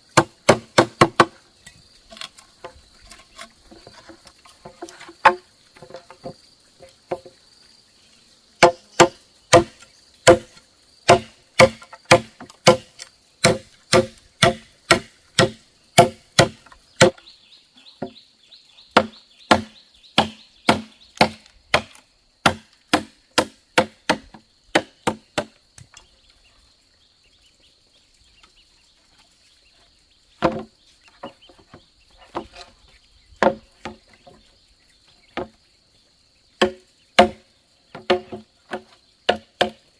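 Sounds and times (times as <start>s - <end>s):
high insect drone: 0.0s - 39.9s
blade chopping bamboo: 0.2s - 1.4s, 8.6s - 17.2s, 19.0s - 25.5s, 36.6s - 39.8s.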